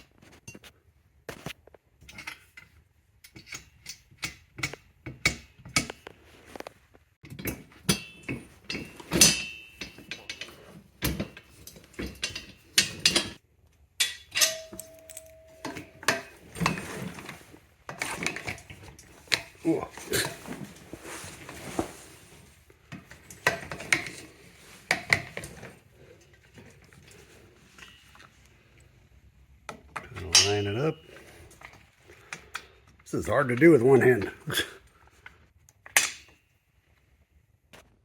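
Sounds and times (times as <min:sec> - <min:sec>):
metal parts clinking and knocking: 0:07.3 - 0:13.4, 0:14.0 - 0:19.6, 0:29.8 - 0:31.8.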